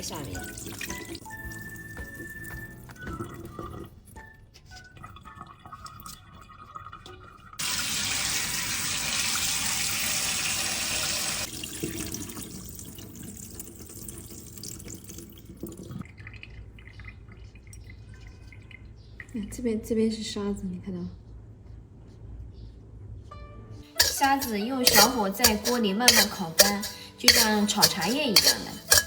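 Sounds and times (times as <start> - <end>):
water splashing in a sink: 0.0 - 4.0, 4.9 - 18.8
tap running hard: 24.0 - 29.0.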